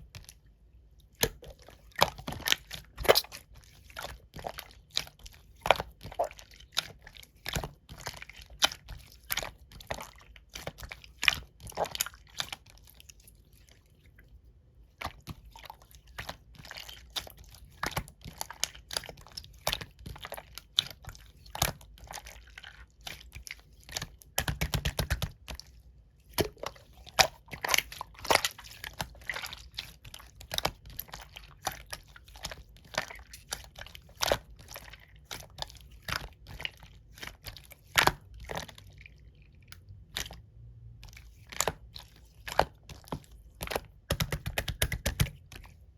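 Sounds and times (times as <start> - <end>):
slime squeezed with sticky pops: 2.3 - 3.5.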